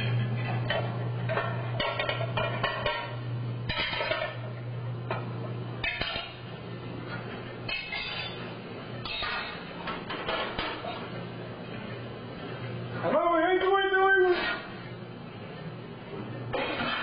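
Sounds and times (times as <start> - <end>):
steady low hum: 0.0 - 17.0
dishes and utensils clinking: 0.1 - 4.5, 5.8 - 6.4, 7.1 - 11.1, 16.5 - 17.0.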